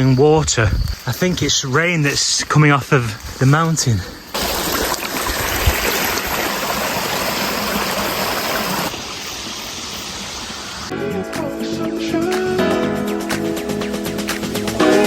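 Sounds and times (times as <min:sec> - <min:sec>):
rushing runoff water: 0:04.3 - 0:10.9.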